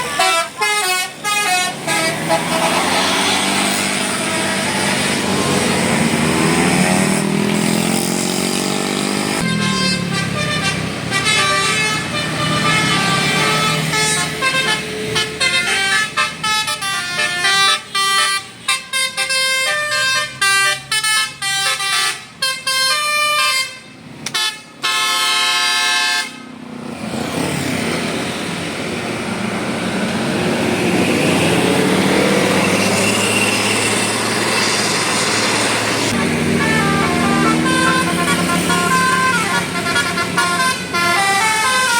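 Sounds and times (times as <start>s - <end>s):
musical air horn melody: 0.0s - 5.6s, 9.4s - 26.4s, 36.0s - 41.9s
bus engine: 0.0s - 41.9s
traffic noise: 0.0s - 41.9s.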